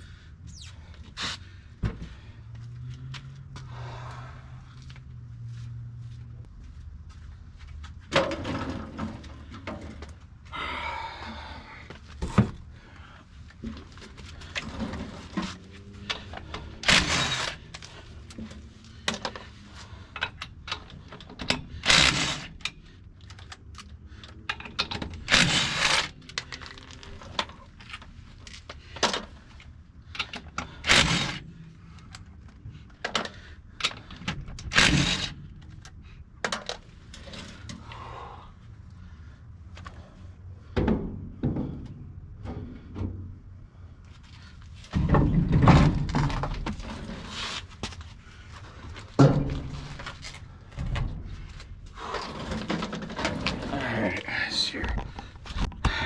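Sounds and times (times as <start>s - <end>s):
metal tools clanking and scraping: 14.6s - 28.1s.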